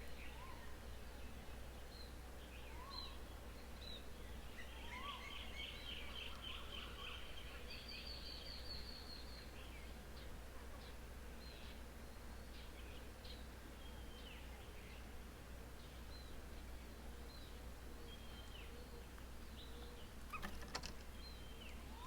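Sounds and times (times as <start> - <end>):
low background hum: 0.0 - 22.0
birds chirping: 17.2 - 22.0.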